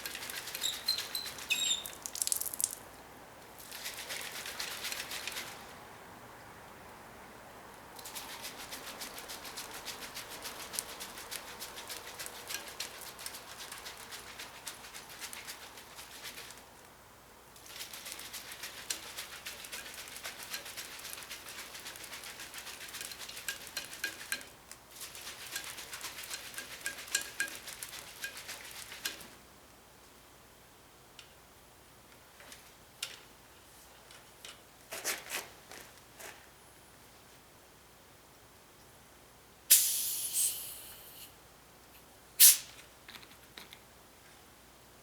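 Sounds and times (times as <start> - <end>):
carbonated water fizzing: 0.7 - 2.9, 39.7 - 41.2.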